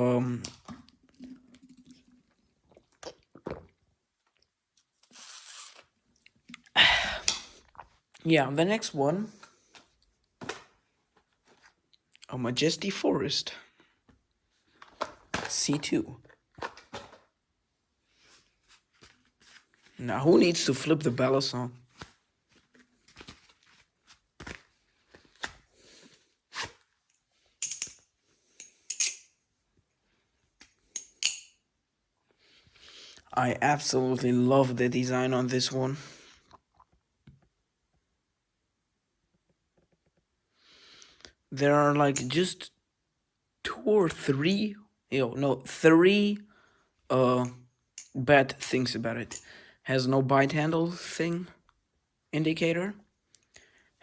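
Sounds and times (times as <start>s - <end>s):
knife clatter: 27.6s - 28.0s, 28.9s - 29.3s, 31.0s - 31.6s
butterfly knife metallic clacks: 28.9s - 29.3s.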